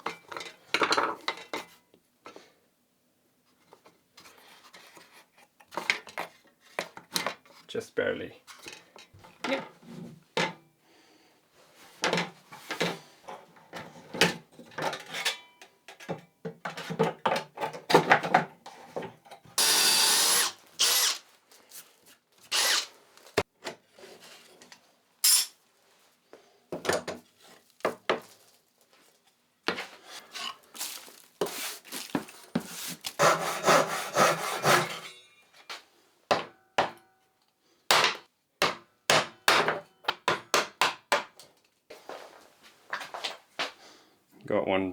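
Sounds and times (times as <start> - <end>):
hand sawing and scraping wood: 18.7 - 24.6, 29.7 - 35.2
power tool running: 19.6 - 21.2, 22.5 - 22.9
steady cutting noise: 19.6 - 21.2, 22.5 - 22.9.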